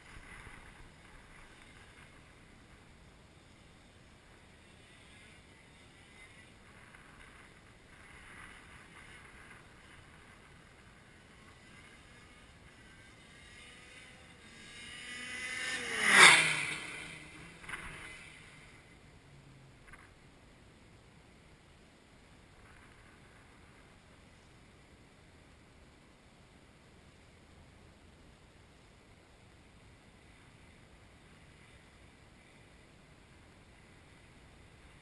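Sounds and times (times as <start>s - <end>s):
kart engine passing by: 0.0s - 20.1s.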